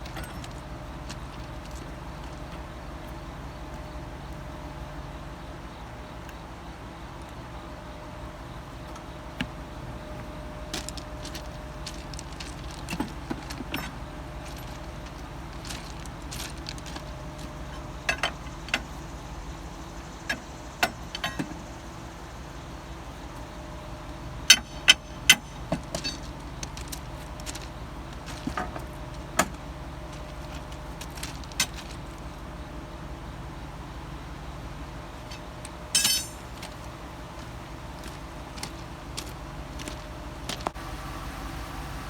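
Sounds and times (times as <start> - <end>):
low engine rumble: 0.0 - 42.0
metallic clicks and clanks: 35.2 - 36.8.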